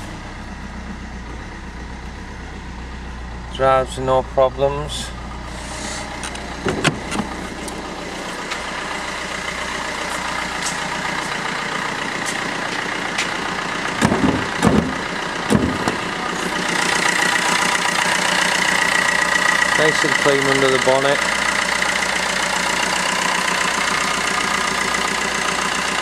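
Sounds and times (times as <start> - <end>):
diesel car engine running: 0.0 - 26.0
short knocks: 14.0 - 16.0.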